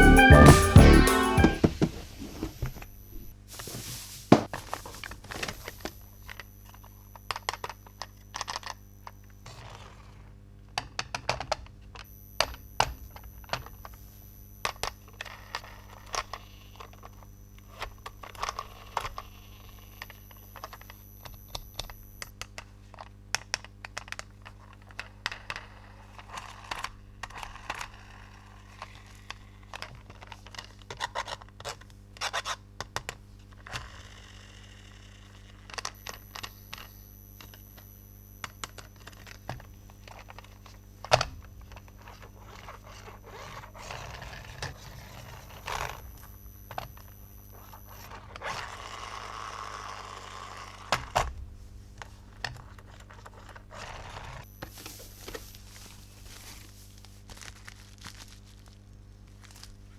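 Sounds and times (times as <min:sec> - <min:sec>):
faint steady hum: 0:00.0 - 0:11.0, 0:11.8 - 0:23.0, 0:35.0 - 0:59.9.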